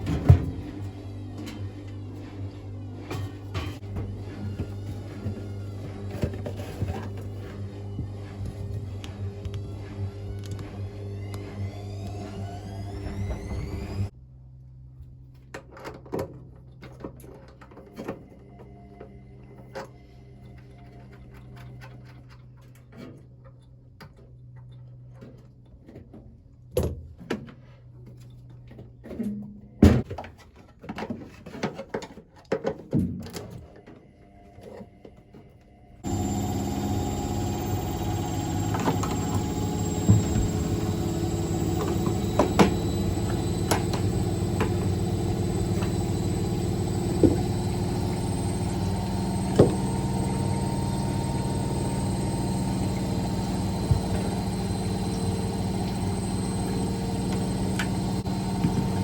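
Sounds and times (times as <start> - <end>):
washing machine motor drone: 0.0 - 14.2, 35.7 - 59.0.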